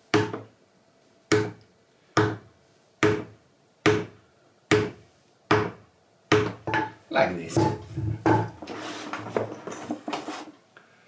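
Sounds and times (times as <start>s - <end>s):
mallet striking hole punch: 0.2s - 0.5s, 1.3s - 1.6s, 2.2s - 2.4s, 3.0s - 7.0s.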